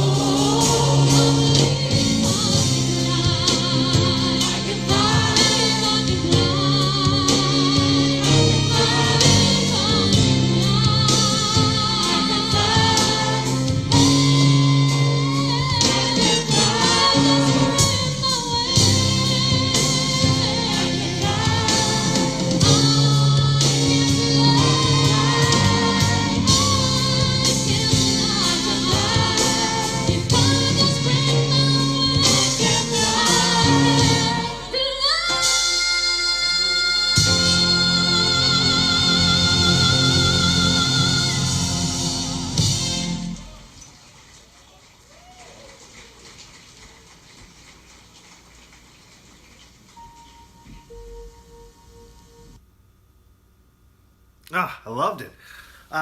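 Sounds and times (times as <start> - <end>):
person singing with vibrato: 0.0 - 42.4
gospel choir and band: 0.0 - 43.9.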